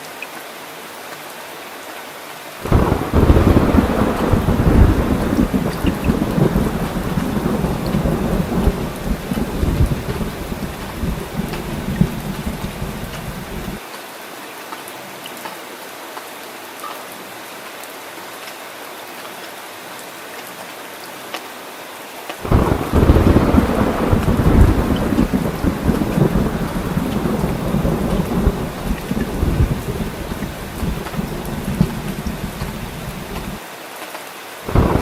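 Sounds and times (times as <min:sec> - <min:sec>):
rain hissing: 0:02.5 - 0:13.8, 0:22.4 - 0:33.7, 0:34.6 - 0:35.0
thunder rumble: 0:02.6 - 0:13.8, 0:22.4 - 0:33.6, 0:34.7 - 0:35.0.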